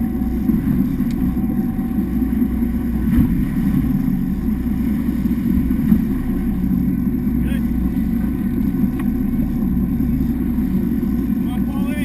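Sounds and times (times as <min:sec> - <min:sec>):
motorboat engine running: 0:00.0 - 0:12.0.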